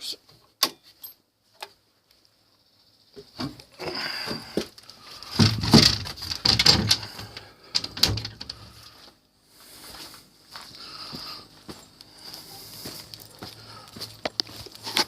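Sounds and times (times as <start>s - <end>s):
footsteps and knocks: 5.3s - 8.6s.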